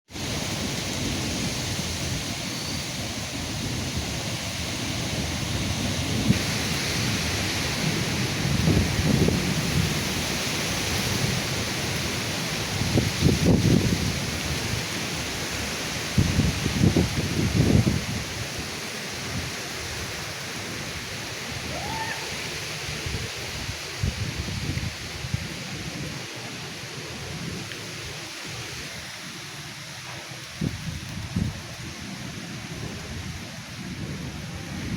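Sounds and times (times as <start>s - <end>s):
rain hissing: 0.1s - 34.9s
low thunder rumbling: 3.0s - 14.8s.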